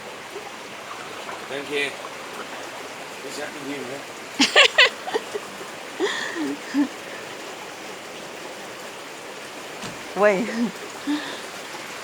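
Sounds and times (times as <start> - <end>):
floodwater rushing: 0.0 - 12.0
voices calling out: 4.4 - 7.4, 9.8 - 11.6.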